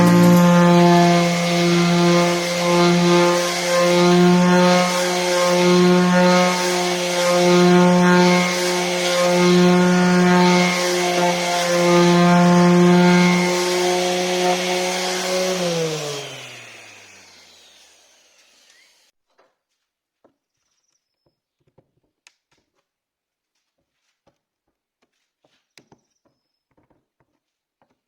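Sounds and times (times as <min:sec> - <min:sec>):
power tool motor running: 0:00.0 - 0:19.1
power tool winding down: 0:00.0 - 0:19.1.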